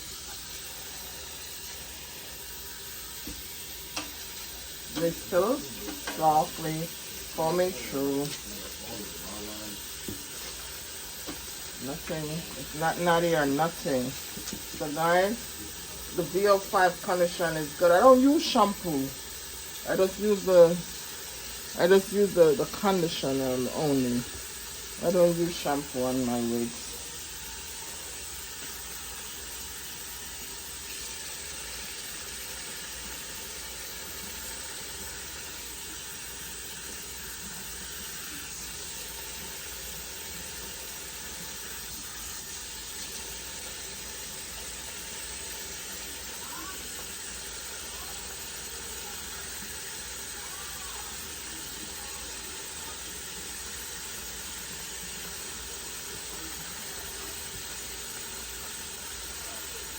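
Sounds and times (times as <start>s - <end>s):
water running from a tap: 0.0s - 59.9s.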